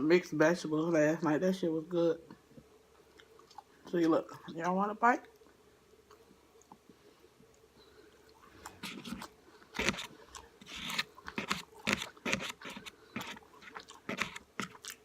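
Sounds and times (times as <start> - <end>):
wet mouth chewing: 3.0 - 3.9, 5.3 - 15.0
food crunching: 3.0 - 4.2, 5.3 - 15.0.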